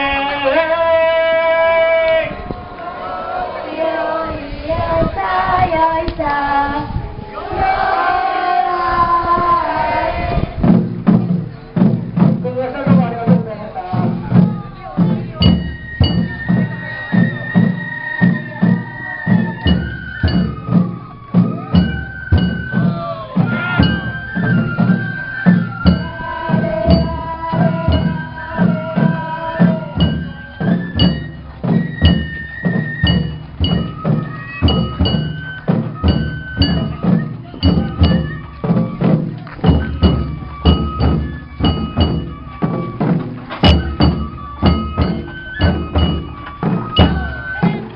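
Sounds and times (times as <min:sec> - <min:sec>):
drums in steady rhythm: 0:10.0 - 0:47.9
flute melody: 0:14.0 - 0:47.9.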